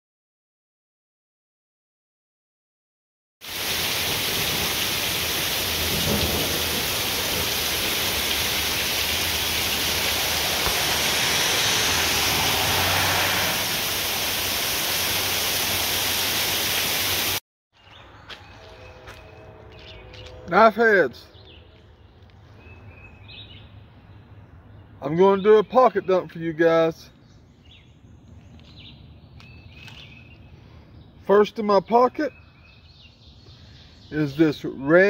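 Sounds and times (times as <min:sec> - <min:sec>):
heavy rain: 0:03.4 - 0:17.4
thunder rumbling: 0:04.0 - 0:14.0.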